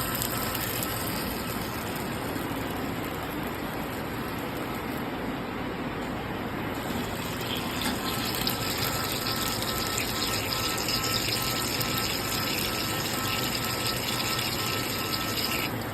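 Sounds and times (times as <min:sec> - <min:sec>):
watery rush of flushing fluid: 0:00.0 - 0:02.9, 0:06.8 - 0:15.9.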